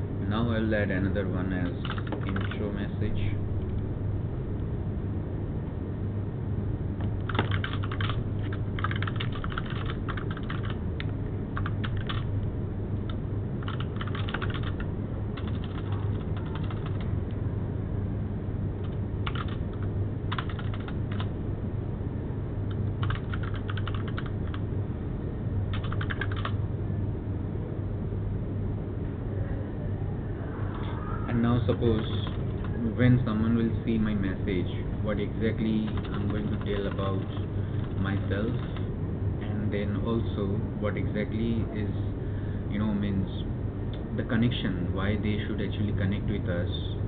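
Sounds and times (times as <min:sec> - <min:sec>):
low hum: 0:00.0 - 0:47.0
keyboard typing clicks: 0:01.8 - 0:02.6, 0:07.1 - 0:12.3, 0:13.0 - 0:14.8, 0:15.4 - 0:17.1, 0:18.8 - 0:21.3, 0:22.7 - 0:24.6, 0:25.7 - 0:26.6.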